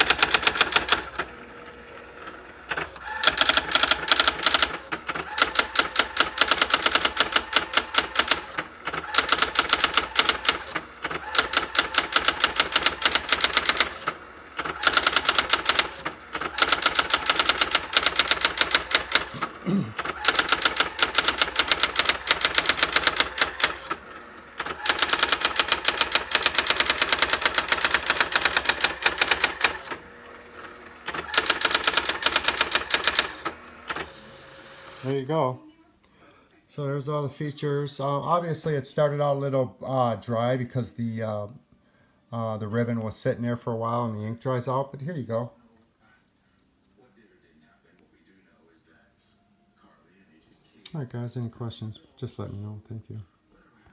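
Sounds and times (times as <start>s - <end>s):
typewriter character strikes: 24.6s - 30.0s, 31.1s - 33.4s.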